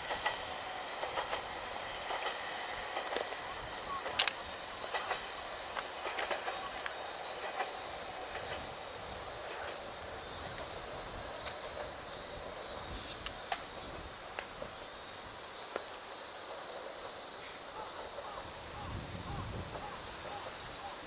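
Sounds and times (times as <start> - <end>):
insects chirring: 0.0 - 21.0
faint clicks: 4.0 - 7.7.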